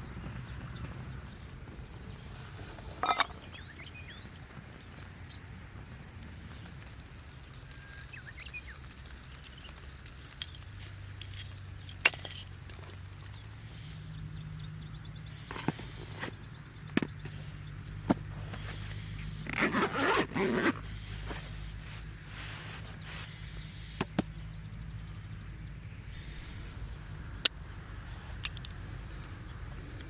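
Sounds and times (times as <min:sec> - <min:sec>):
bird chirping: 0:00.0 - 0:09.8, 0:13.0 - 0:30.0
campfire crackling: 0:00.0 - 0:30.0
fire snapping: 0:05.8 - 0:13.5
rustling scrape: 0:18.3 - 0:23.6.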